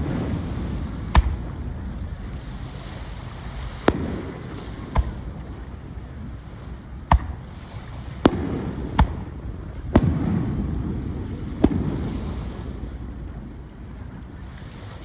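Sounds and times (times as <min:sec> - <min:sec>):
fireworks bangs: 0:00.0 - 0:05.8, 0:07.0 - 0:07.6, 0:08.2 - 0:13.5.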